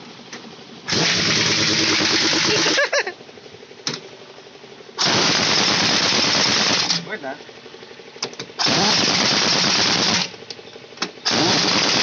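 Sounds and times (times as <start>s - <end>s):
pneumatic impact wrench rattling: 0.8s - 2.8s, 5.0s - 7.1s, 8.2s - 12.0s.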